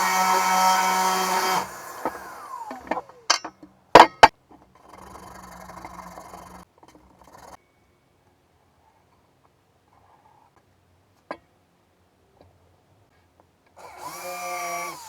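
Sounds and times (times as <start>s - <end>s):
power saw winding down: 0.0s - 3.4s, 13.8s - 15.0s.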